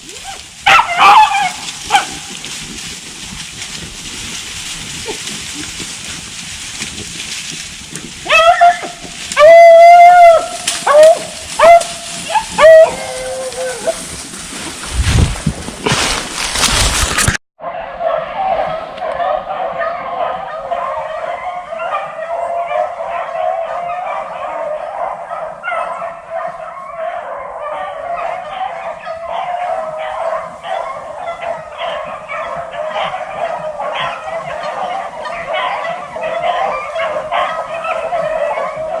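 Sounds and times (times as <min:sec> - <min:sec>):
dogs baying: 0:00.6 - 0:02.4, 0:08.2 - 0:14.1, 0:17.6 - 0:39.0.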